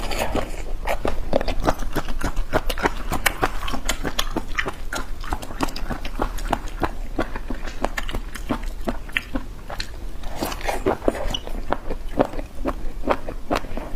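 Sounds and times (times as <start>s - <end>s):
wet chewing mouth smacks: 0.0s - 13.9s.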